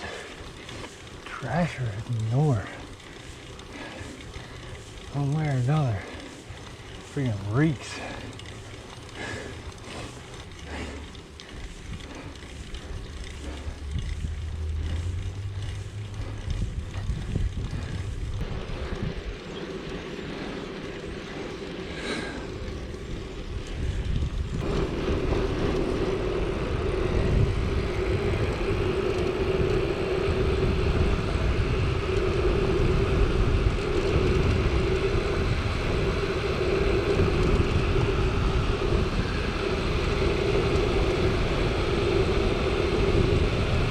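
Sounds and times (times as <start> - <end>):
bike tyres rolling: 0.0 - 43.9
wind on microphone: 13.5 - 19.6, 21.9 - 43.9.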